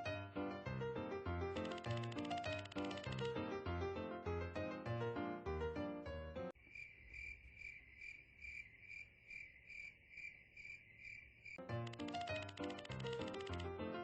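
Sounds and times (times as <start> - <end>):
music: 0.0 - 6.5, 11.6 - 14.0
cricket chirping: 6.6 - 11.6.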